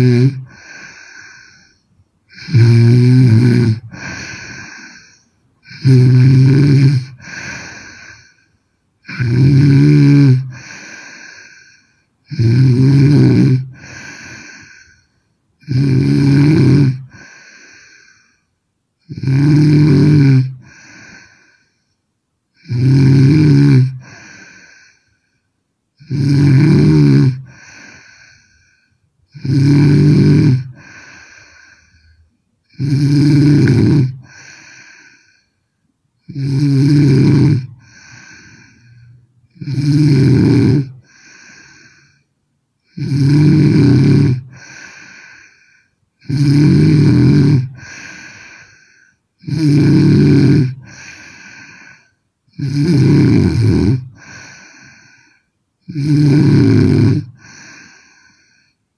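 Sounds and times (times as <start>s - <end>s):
woman snoring loudly: 0.0s - 8.4s, 9.0s - 18.4s, 19.0s - 21.7s, 22.6s - 25.1s, 26.0s - 35.5s, 36.2s - 58.8s.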